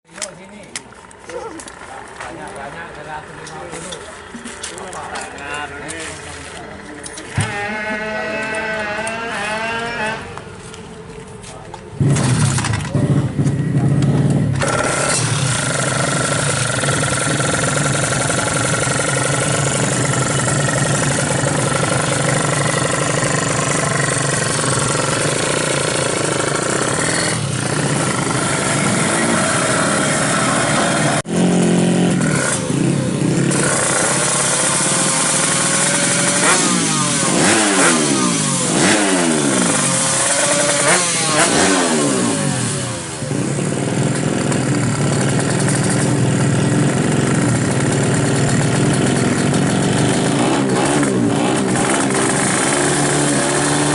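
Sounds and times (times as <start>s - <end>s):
motorcycle engine revving: 0.1s - 10.7s, 11.9s - 53.9s.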